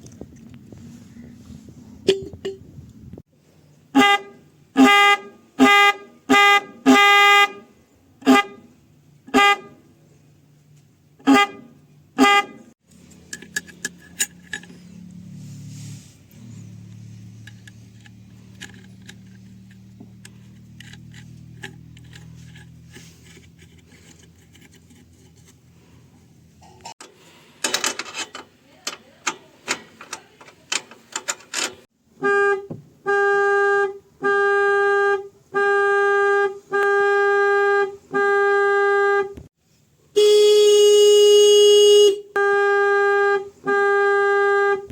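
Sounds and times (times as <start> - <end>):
car horn honking: 3.9 - 9.9, 11.2 - 12.7, 32.2 - 39.4, 40.1 - 44.9
clicks and clatters: 12.9 - 14.8, 16.9 - 25.6, 26.8 - 31.9.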